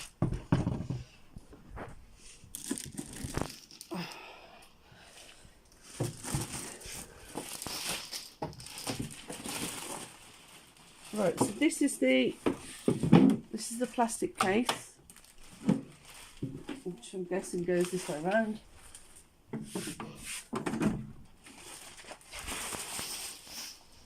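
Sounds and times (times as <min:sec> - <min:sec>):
packaging crinkling and rustling: 0:01.7 - 0:03.9, 0:05.7 - 0:13.1, 0:14.5 - 0:19.3, 0:21.3 - 0:24.0.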